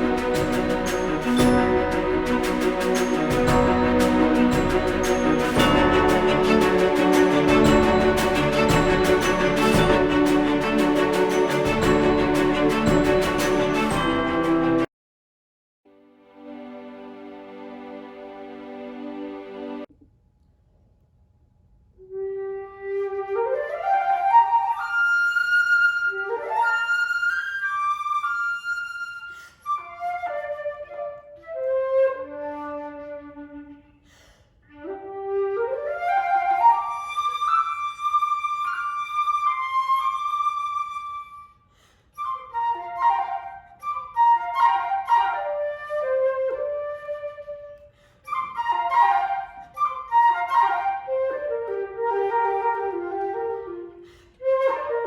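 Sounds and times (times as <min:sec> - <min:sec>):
solo flute melody: 0:00.0 - 0:14.9, 0:22.0 - 0:34.0, 0:34.7 - 0:55.0
flute player breathing: 0:29.1 - 0:29.8, 0:33.9 - 0:34.8, 0:41.6 - 0:42.3, 0:47.8 - 0:48.4, 0:53.9 - 0:54.5.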